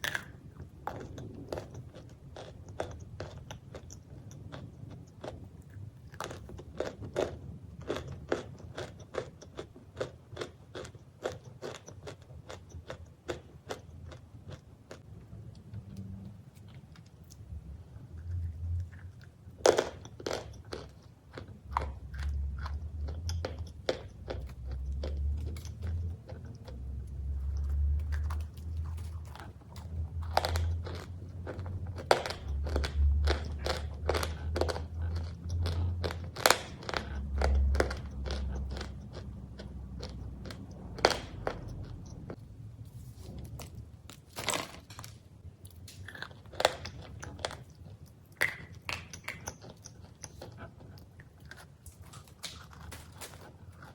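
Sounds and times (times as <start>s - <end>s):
cookies crunching while chewed: 0.0s - 42.4s, 43.3s - 53.9s.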